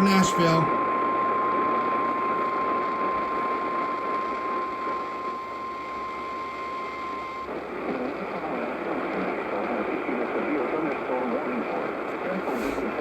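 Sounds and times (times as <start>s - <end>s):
steady warning alarm tone: 0.0s - 7.7s
radio static: 0.0s - 13.0s.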